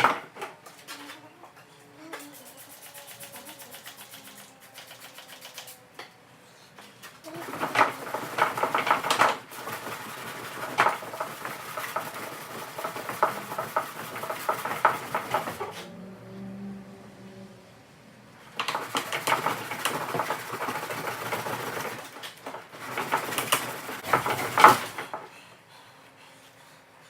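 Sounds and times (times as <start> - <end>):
sandpaper scratching by hand: 2.2 - 5.8.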